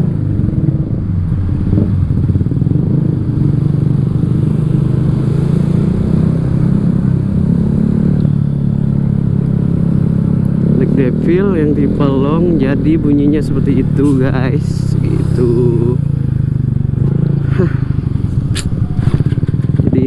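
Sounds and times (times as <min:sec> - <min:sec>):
scooter engine exhaust note: 0:07.1 - 0:20.0.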